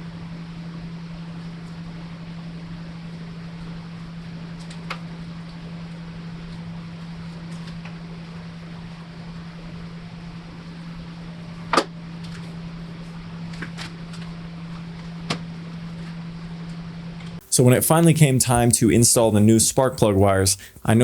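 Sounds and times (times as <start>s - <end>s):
steady low hum: 17.3s - 21.0s.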